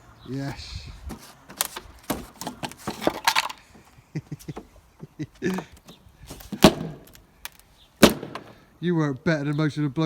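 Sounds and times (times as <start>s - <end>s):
wood clattering: 1.0s - 4.8s, 5.4s - 8.6s.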